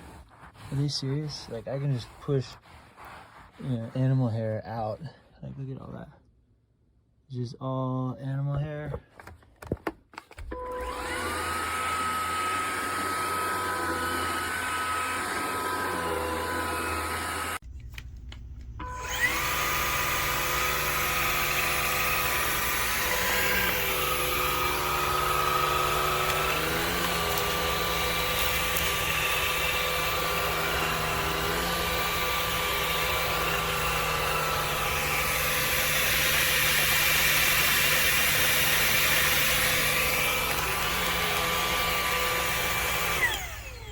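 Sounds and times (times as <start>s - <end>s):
cordless vacuum motor whine: 10.5s - 17.6s, 18.6s - 43.9s.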